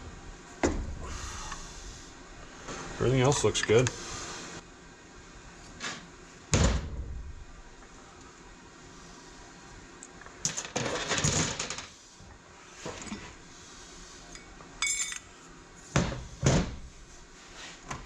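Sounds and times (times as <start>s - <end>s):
metal parts clinking: 14.8s - 15.3s.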